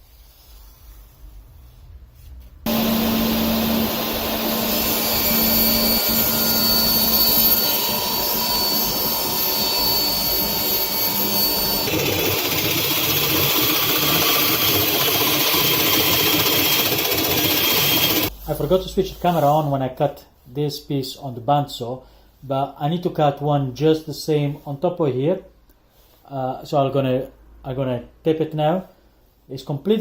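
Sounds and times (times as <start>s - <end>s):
power tool running: 2.7s - 18.3s.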